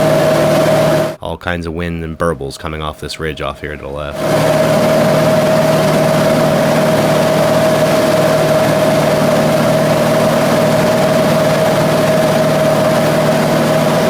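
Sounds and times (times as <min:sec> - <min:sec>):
airplane engine and propeller droning: 0:00.0 - 0:01.2, 0:04.1 - 0:14.0.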